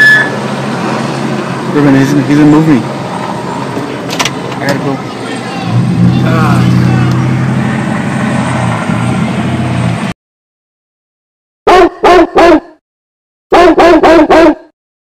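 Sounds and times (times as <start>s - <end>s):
short loud pitched notes: 0.0s - 0.4s
vehicle engine hum: 0.0s - 10.2s.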